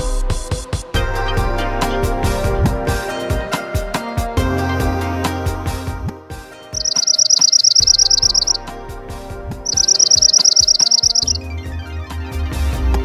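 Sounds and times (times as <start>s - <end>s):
songbird trilling: 6.8s - 8.7s, 9.7s - 11.5s.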